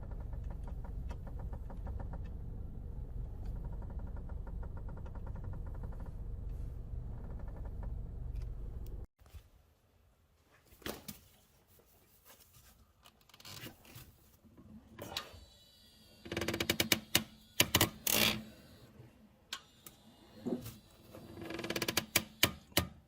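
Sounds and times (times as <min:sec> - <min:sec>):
car suspension creaking and clicking: 0:00.0 - 0:09.1, 0:16.3 - 0:18.5, 0:21.2 - 0:22.7.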